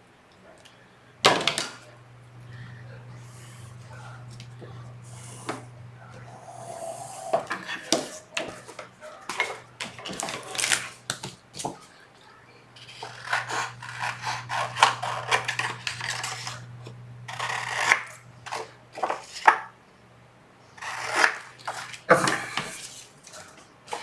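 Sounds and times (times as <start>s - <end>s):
faint low hum: 0.0s - 24.0s
paper rustling: 7.5s - 11.9s, 12.8s - 19.6s, 20.8s - 24.0s
scissors snipping cardstock: 12.8s - 16.7s.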